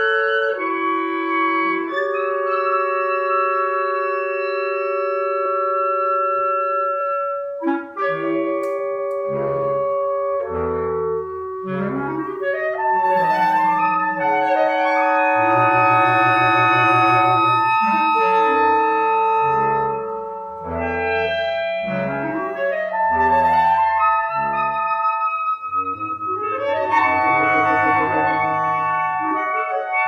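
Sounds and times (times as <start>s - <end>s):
held wind instrument tones: 0.0s - 30.0s
fast pulsing low note: 25.7s - 30.0s.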